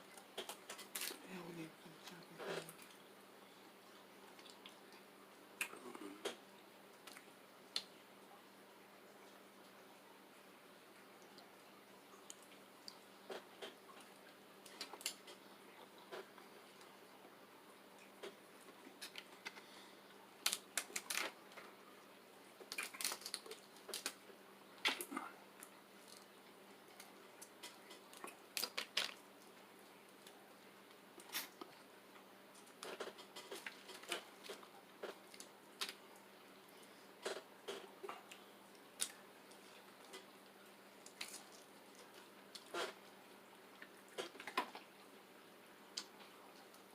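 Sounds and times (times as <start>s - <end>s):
shells cracking: 20.4s - 21.3s
wet chewing: 22.6s - 24.2s, 41.0s - 43.1s.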